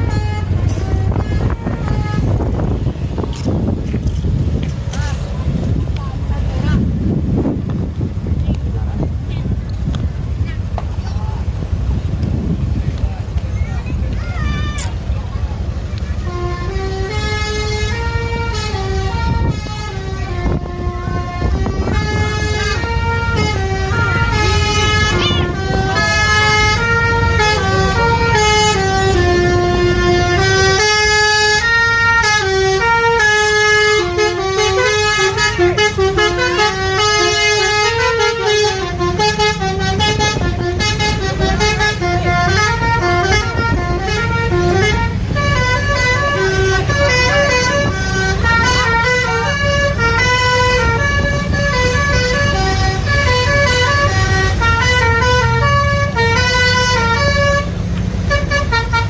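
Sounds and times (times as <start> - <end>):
musical air horn melody: 0.0 - 3.2, 16.2 - 59.0
bus engine running: 0.0 - 59.0.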